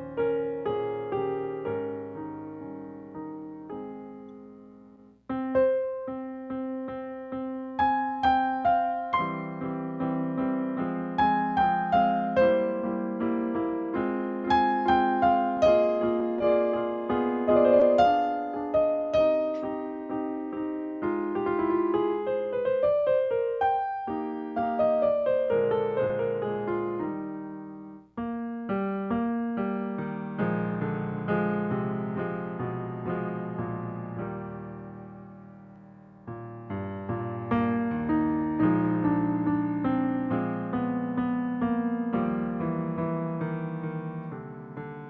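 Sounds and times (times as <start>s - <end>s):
piano playing slow melody: 0.0s - 45.0s.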